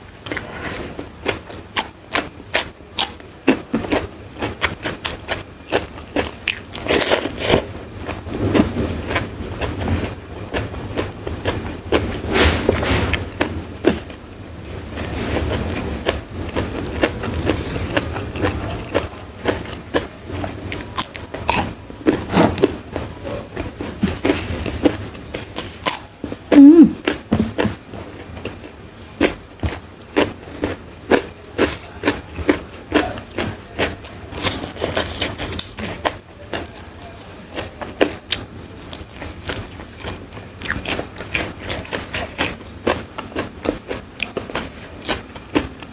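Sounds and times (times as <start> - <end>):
chewing: 0.2 - 14.2, 14.9 - 45.9
crisp bites and crunching: 6.2 - 7.7.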